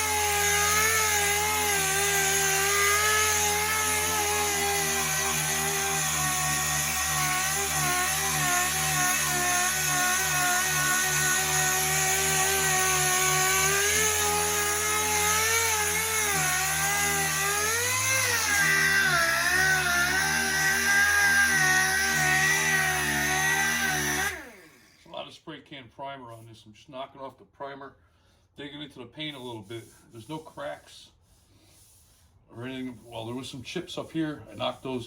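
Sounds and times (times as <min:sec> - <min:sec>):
power sander on metal panels: 0:00.0 - 0:25.0.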